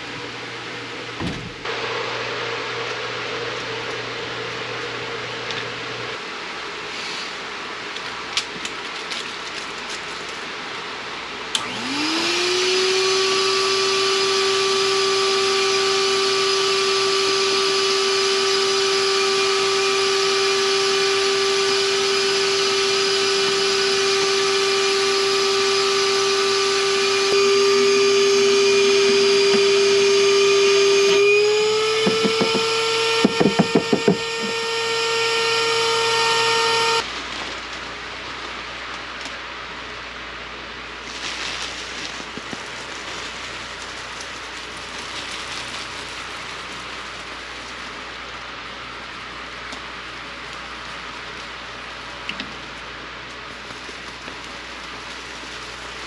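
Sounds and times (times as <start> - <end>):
electric motor whining: 11.6 - 37.0.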